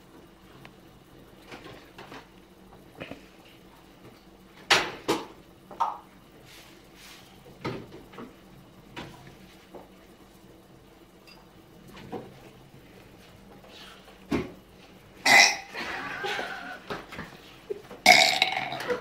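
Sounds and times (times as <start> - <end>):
person burping: 15.2 - 15.8, 18.0 - 19.0.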